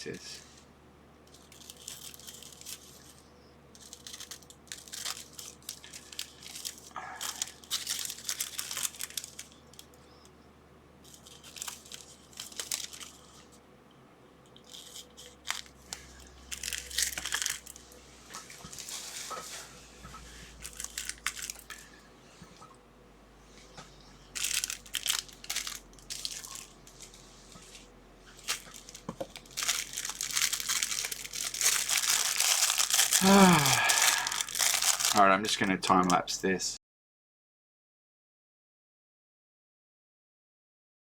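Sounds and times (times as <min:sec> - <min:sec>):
plastic bags crinkling: 0:01.3 - 0:10.0, 0:11.0 - 0:13.6, 0:14.5 - 0:19.6, 0:20.4 - 0:22.0, 0:24.3 - 0:36.2.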